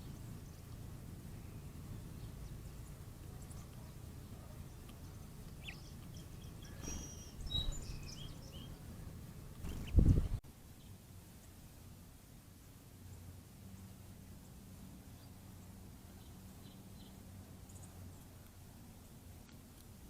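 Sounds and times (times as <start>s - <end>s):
finches chirping: 0.0s - 10.4s
low outdoor rumble: 0.0s - 11.9s.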